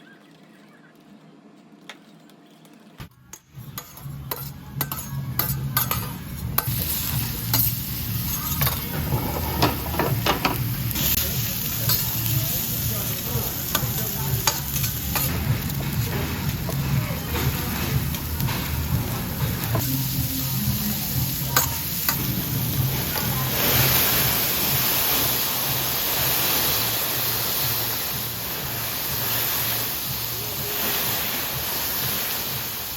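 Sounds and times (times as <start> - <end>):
meat sizzling on a griddle: 6.6 - 32.9.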